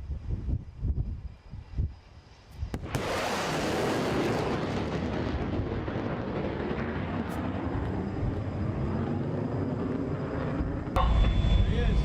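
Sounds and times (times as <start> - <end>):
airplane flying low overhead: 3.5 - 12.0.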